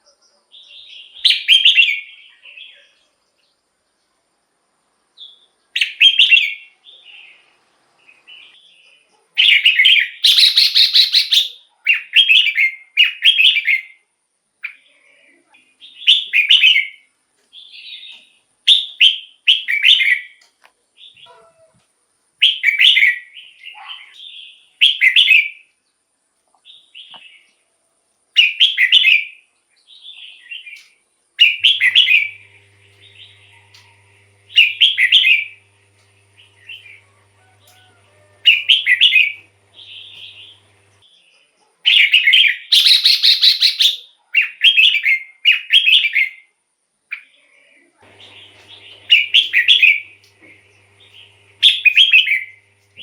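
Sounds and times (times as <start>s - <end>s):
bird chirps: 9.5s - 13.5s, 30.1s - 41.0s, 42.1s - 44.0s, 48.1s - 53.0s
bird singing whistled phrases: 9.7s - 13.6s, 42.7s - 44.0s.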